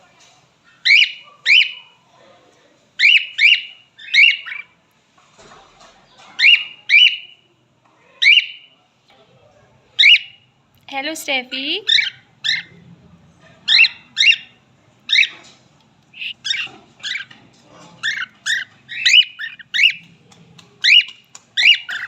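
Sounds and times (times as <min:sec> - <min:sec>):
cockatiel whistled calls: 0:03.0 - 0:04.7, 0:06.4 - 0:07.3, 0:08.2 - 0:08.7, 0:10.0 - 0:10.4, 0:11.9 - 0:12.7, 0:13.7 - 0:15.4, 0:16.2 - 0:17.3, 0:18.0 - 0:20.0, 0:20.8 - 0:22.0.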